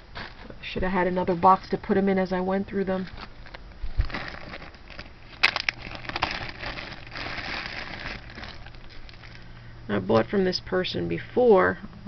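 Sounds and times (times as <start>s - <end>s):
plastic bags crinkling: 3.0s - 9.5s.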